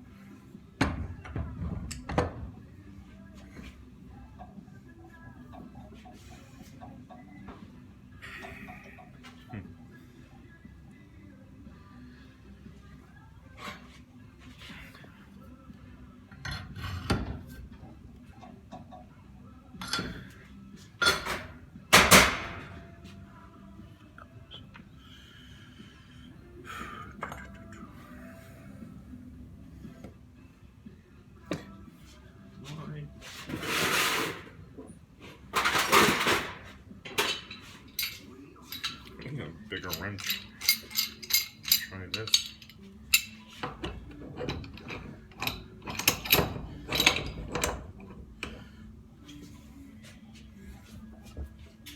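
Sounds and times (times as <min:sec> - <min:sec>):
metal tools clanking and rattling: 0:16.3 - 0:17.7, 0:19.8 - 0:20.4, 0:21.0 - 0:22.8, 0:35.5 - 0:48.8
wrench clinking: 0:19.8 - 0:20.3, 0:37.2 - 0:48.6.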